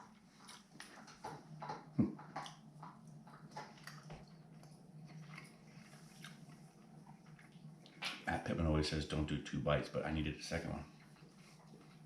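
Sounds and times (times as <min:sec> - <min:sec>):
person chewing crunchily: 0:00.0 - 0:08.3
steady low hum: 0:00.0 - 0:12.0.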